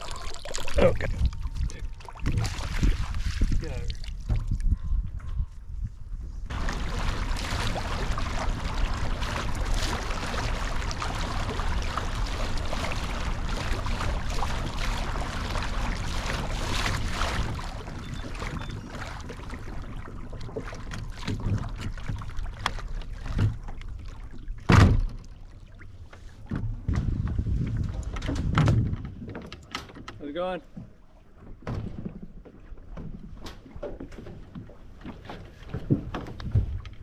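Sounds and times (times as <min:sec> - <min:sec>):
water splashing against kayak hull: 0:00.0 - 0:04.8, 0:06.5 - 0:37.0
wind rumbling on microphone: 0:00.7 - 0:25.0, 0:26.4 - 0:29.6, 0:35.5 - 0:37.0.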